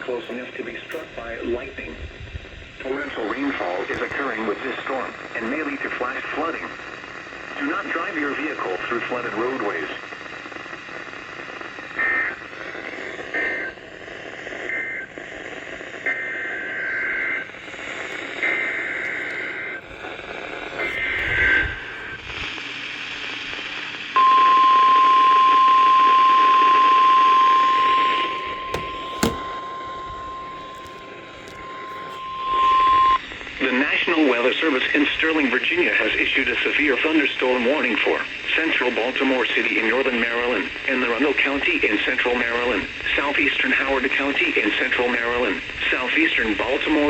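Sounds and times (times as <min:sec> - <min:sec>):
radio static: 0:00.0 - 0:24.4, 0:26.0 - 0:47.0
steady high alarm tone: 0:24.2 - 0:33.3.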